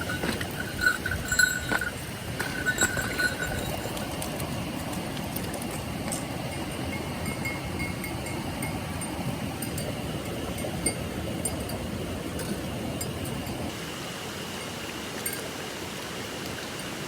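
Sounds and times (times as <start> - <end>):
stream rushing over rocks: 12.7 - 17.0.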